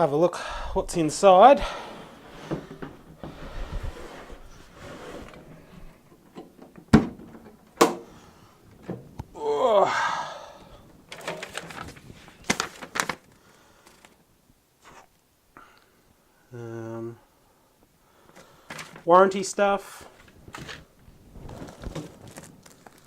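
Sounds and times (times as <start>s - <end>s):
plastic and paper crinkling: 11.1s - 14.2s, 18.3s - 19.1s, 20.0s - 23.0s.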